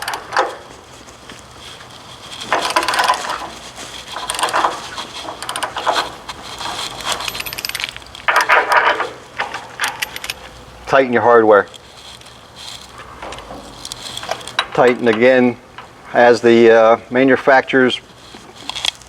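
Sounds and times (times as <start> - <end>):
wrench clicking and scraping: 0.0 - 0.7, 2.2 - 10.6, 11.7 - 16.0, 18.6 - 19.0.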